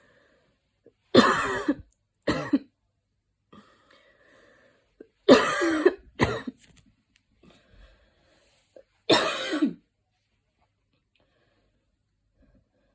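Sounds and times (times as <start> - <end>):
person coughing: 1.2 - 2.7, 5.3 - 6.6, 9.1 - 9.8.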